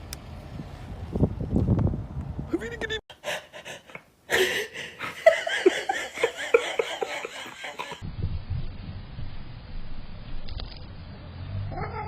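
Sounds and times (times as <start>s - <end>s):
person laughing: 2.5s - 8.0s.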